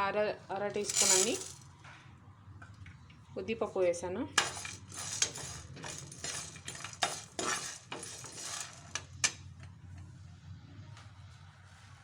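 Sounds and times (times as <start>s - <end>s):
spoon scraping dry seeds in pan: 0.8s - 1.6s, 4.4s - 9.4s.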